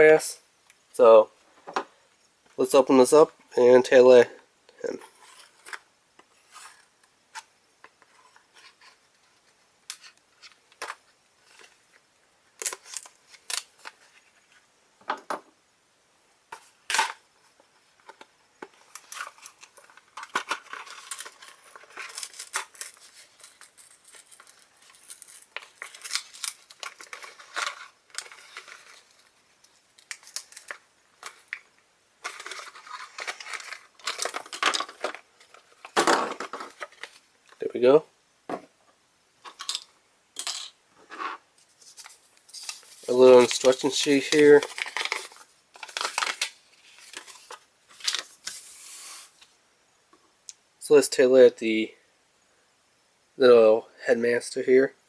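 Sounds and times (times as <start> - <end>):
cardboard and plastic rustling: 17.9 - 37.3, 41.1 - 49.5.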